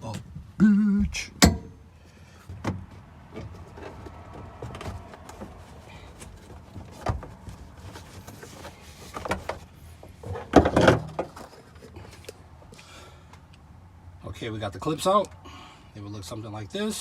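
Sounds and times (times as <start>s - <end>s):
handling rustle: 3.4s - 12.4s.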